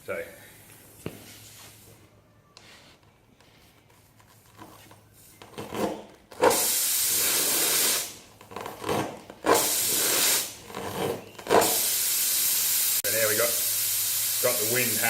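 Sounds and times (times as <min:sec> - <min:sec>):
reamer rasping in tyre: 0:04.4 - 0:15.0
air hissing from tyre: 0:06.4 - 0:08.2, 0:09.5 - 0:10.6, 0:11.5 - 0:15.0.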